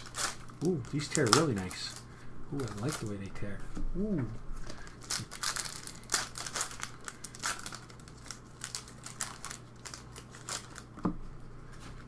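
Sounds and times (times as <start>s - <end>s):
card pack wrappers tearing: 0.0s - 3.3s, 4.6s - 11.0s.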